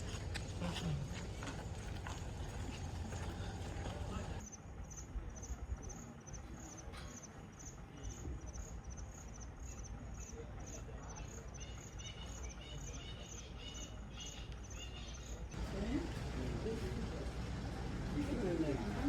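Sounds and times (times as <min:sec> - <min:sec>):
insect chirping: 0:07.6 - 0:15.4.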